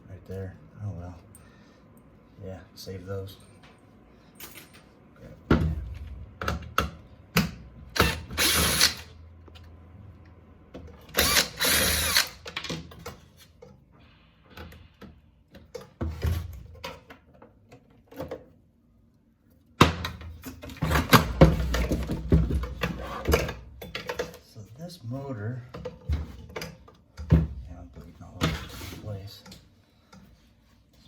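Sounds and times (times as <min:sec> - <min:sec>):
cordless drill running: 0:08.0 - 0:09.1, 0:11.1 - 0:12.4.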